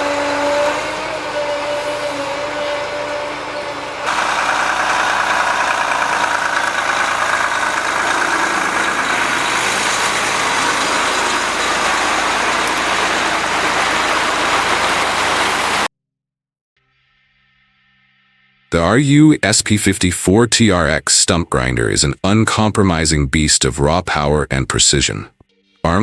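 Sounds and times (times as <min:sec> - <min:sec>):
heavy machine engine running: 0:00.0 - 0:15.9.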